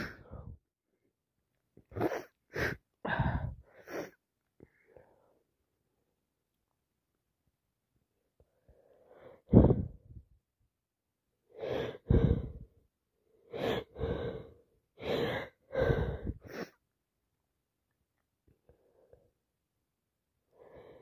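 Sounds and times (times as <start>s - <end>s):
gasping intake of breath: 13.8s - 16.8s.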